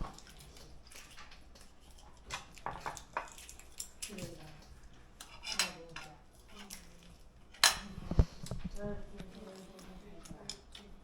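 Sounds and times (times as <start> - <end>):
tableware clinking: 7.6 - 8.0.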